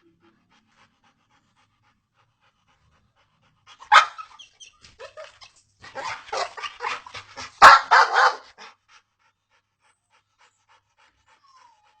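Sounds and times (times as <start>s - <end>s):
dog panting: 0.0s - 12.0s.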